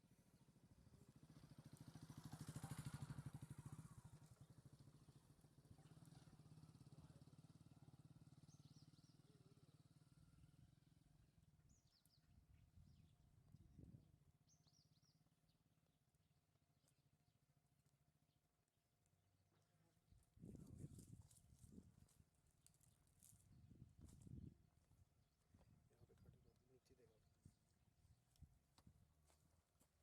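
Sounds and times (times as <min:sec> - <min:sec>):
passing motor vehicle engine: 0:01.1 - 0:05.1.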